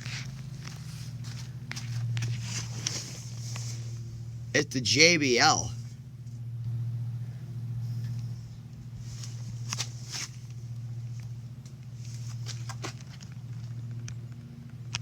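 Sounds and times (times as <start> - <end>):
handling clicks and rustles: 0.0 - 4.1, 9.2 - 15.0
low hum: 0.0 - 15.0.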